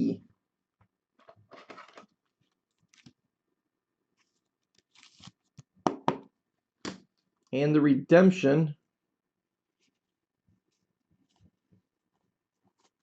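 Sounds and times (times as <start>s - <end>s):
trading cards rustling and sliding: 4.1s - 5.7s.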